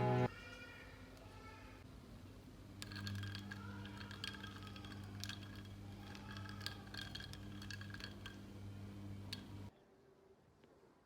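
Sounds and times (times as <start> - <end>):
light clicks and glassy taps: 2.8 - 8.5
low hum: 2.8 - 9.7.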